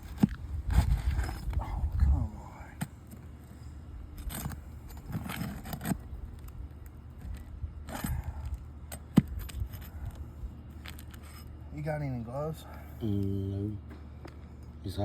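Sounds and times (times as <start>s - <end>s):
hand tools scraping roof shingles: 4.2s - 6.0s.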